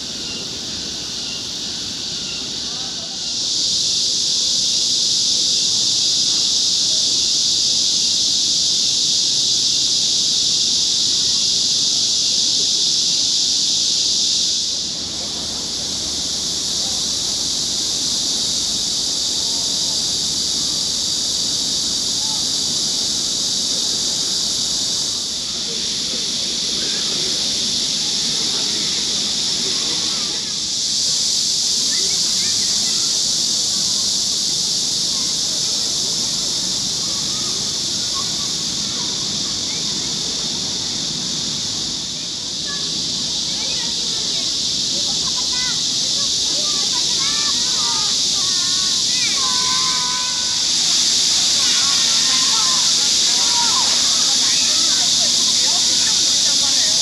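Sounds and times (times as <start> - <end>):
cicadas buzzing chorus: 0.0 - 57.0.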